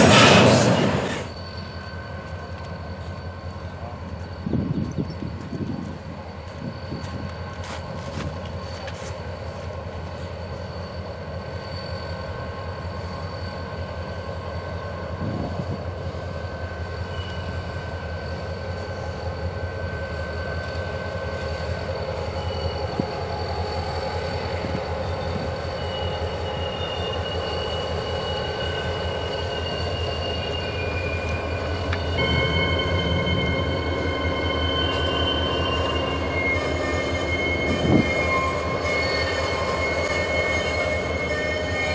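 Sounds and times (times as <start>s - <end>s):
train rumbling past: 0.0s - 41.9s
train wheels squealing: 0.0s - 41.9s.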